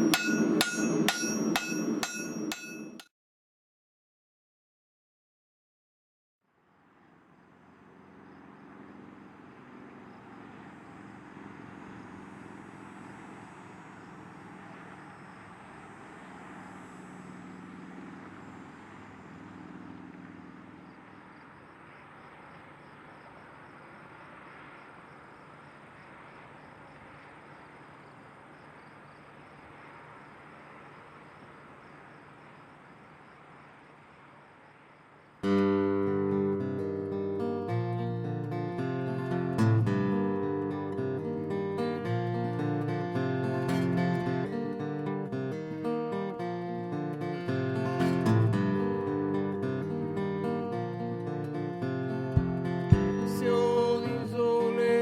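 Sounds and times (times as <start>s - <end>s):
insects chirping: 0.0s - 2.6s, 6.6s - 55.0s
low motor hum: 7.0s - 22.0s, 52.4s - 53.7s.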